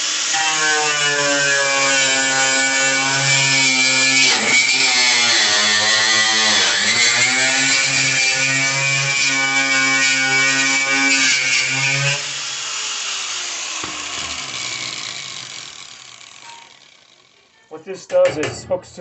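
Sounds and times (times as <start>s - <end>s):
power sander on sheet metal: 0.0s - 17.5s
sander spinning down whine: 9.3s - 17.5s.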